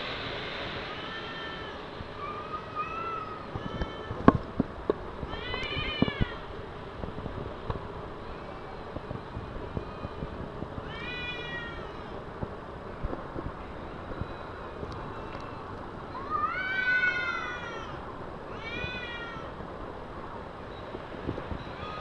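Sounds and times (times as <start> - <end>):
steady background noise: 0.0 - 22.0
cats caterwauling: 0.9 - 4.4, 5.3 - 6.5, 10.8 - 12.2, 15.1 - 19.5.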